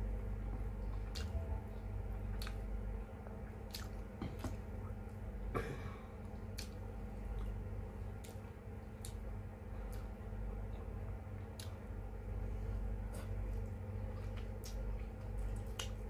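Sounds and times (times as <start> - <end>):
low steady hum: 0.0 - 16.0
close chewing with mouth clicks: 3.6 - 4.6, 6.5 - 10.1, 13.2 - 16.0.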